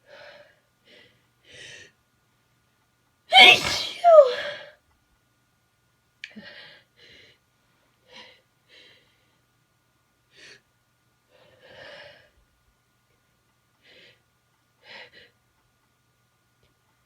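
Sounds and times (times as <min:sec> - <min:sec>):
person breathing and gasping: 0:03.3 - 0:04.7.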